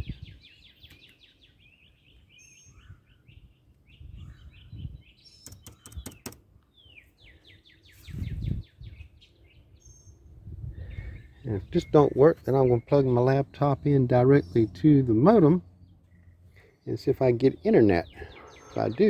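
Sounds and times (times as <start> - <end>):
small birds trilling: 0.0 - 19.0
sharp clicks: 5.4 - 6.6
low rumbling on microphone: 8.0 - 9.0, 10.2 - 16.3.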